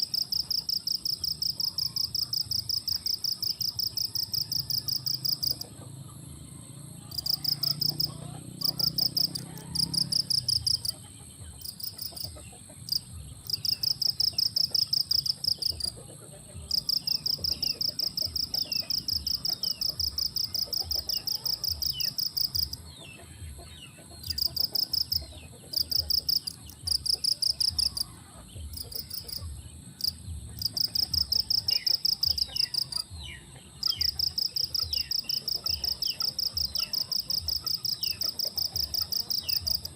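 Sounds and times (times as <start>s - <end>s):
insect chirping in pulse trains: 7.0s - 10.9s, 12.9s - 15.8s, 28.7s - 33.1s
small birds chirping: 7.2s - 39.9s.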